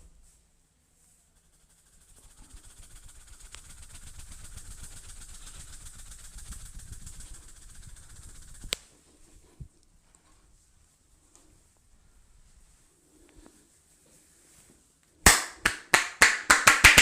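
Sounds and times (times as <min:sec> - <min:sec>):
rubbing strokes of head massage: 0:00.0 - 0:17.0
hiss: 0:01.3 - 0:08.9.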